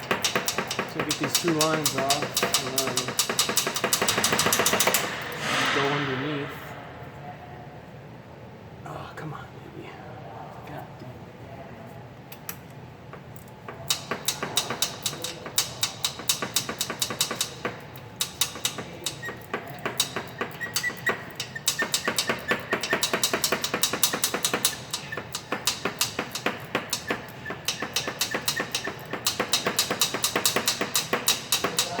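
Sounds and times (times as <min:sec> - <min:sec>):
ratchet wrench clicking: 0:00.0 - 0:05.2, 0:13.3 - 0:32.0.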